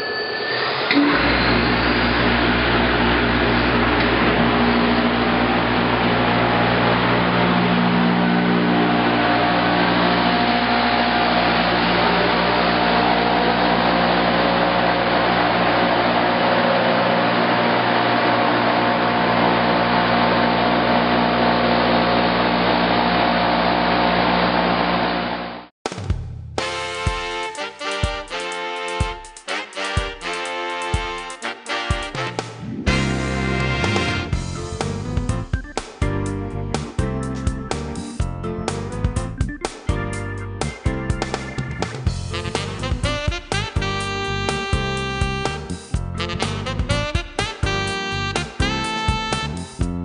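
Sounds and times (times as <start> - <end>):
sanding machine whirring: 0.3 - 25.6.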